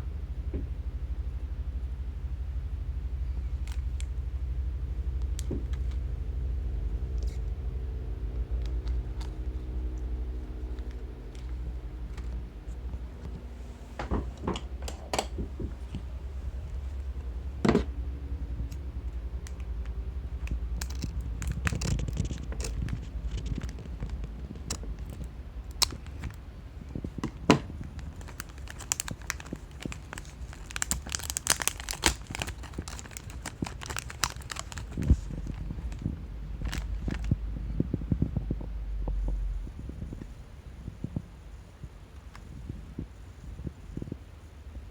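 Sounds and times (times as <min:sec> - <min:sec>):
low hum: 0:00.0 - 0:44.9
plastic packets crinkling: 0:18.6 - 0:37.4.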